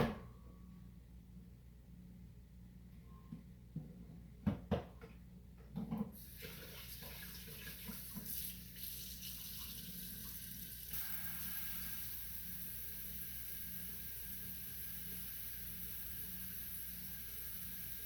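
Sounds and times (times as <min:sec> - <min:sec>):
tap running into sink: 0:06.2 - 0:08.9.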